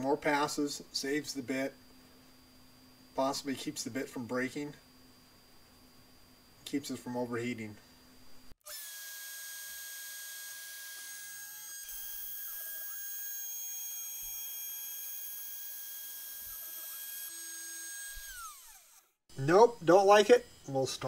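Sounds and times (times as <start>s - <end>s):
router spindle high whine: 8.7s - 19.1s.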